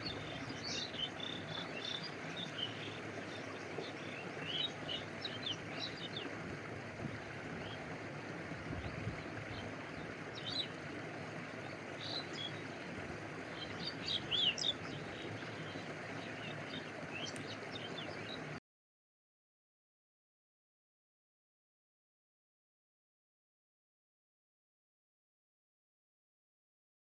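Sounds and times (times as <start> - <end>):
small birds chirping: 0.0 - 6.4, 8.6 - 18.6
stream water flowing: 0.0 - 18.6.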